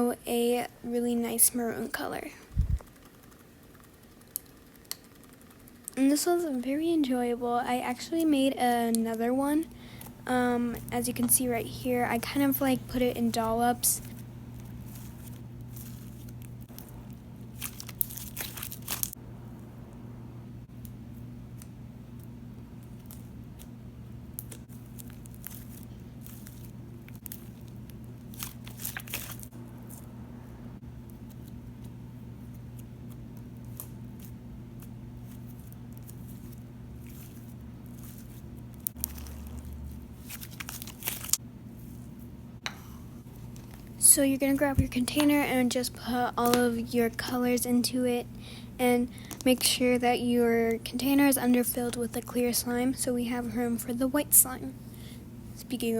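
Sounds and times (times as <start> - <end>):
low electrical hum: 0.0 - 55.9
slime tearing and squishing: 17.5 - 19.2, 24.4 - 29.5, 35.3 - 41.4.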